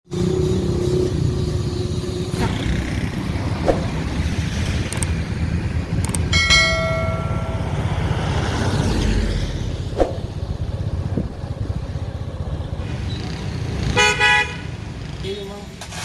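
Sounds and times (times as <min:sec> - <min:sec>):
vehicle engine rumble: 0:00.1 - 0:16.0
bell-like ringing tone: 0:06.3 - 0:08.5.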